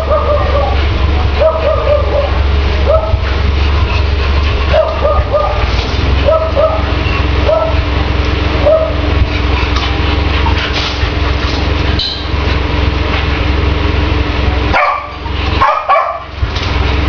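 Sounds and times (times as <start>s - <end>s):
dog barking: 0.0s - 3.4s, 4.7s - 7.8s, 8.6s - 9.1s, 14.7s - 16.4s
engine humming: 0.0s - 17.0s.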